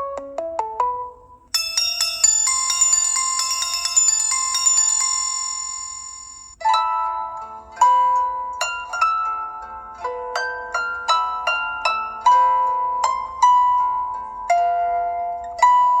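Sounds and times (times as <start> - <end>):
phone ringtone melody: 1.5 - 7.4.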